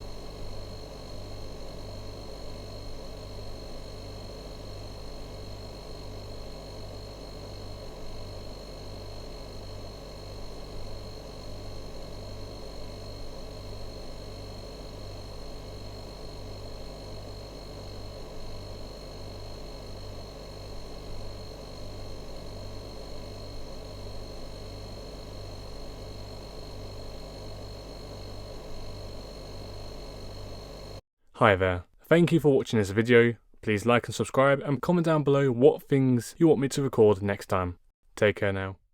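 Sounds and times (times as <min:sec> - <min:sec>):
fluorescent lights humming: 0:00.0 - 0:31.0.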